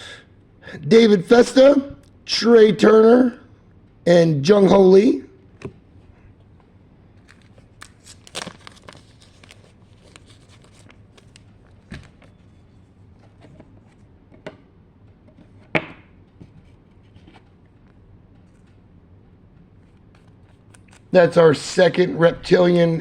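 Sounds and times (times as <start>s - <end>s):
trading cards rustling and sliding: 7.2s - 12.5s.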